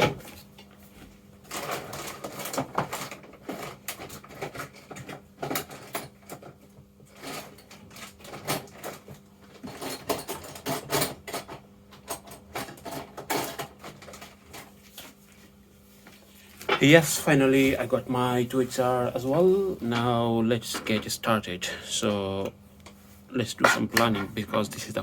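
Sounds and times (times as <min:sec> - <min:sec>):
faint steady hum: 0:00.0 - 0:25.0
tools clicking and clattering: 0:01.5 - 0:14.7.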